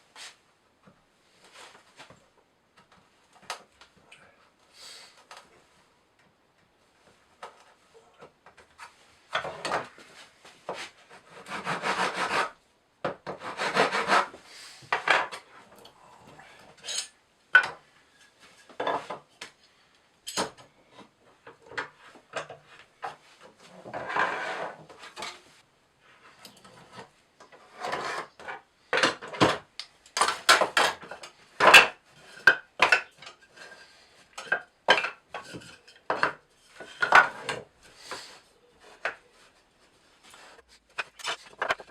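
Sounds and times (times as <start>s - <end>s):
sawing or rasping wood: 11.1s - 12.6s, 13.3s - 14.4s
wooden knocks and tool clicks: 30.2s - 31.0s.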